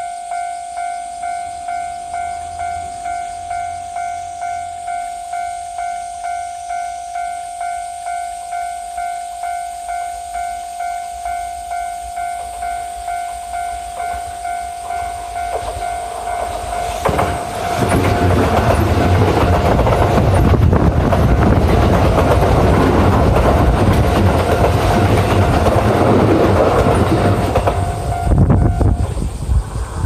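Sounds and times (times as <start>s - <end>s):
train rumbling past: 0.0s - 30.0s
wheels clattering over rail joints: 14.0s - 29.3s.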